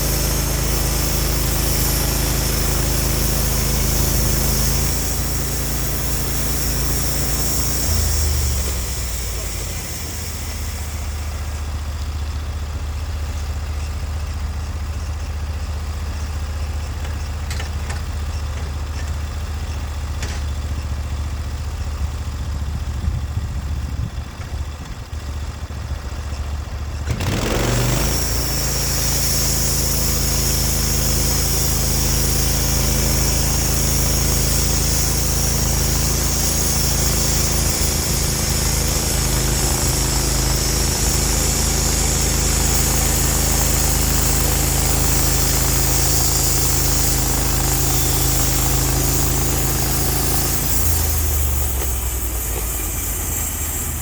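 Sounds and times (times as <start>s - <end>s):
sawmill engine running: 0.0s - 54.0s
steady high hiss: 28.2s - 54.0s.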